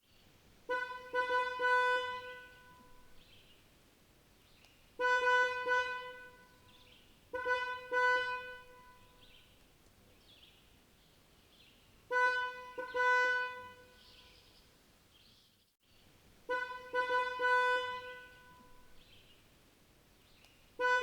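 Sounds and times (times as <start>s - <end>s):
distant car horn honking: 0.7s - 3.2s, 5.0s - 9.4s, 12.1s - 14.3s, 16.4s - 19.1s, 20.8s - 21.0s.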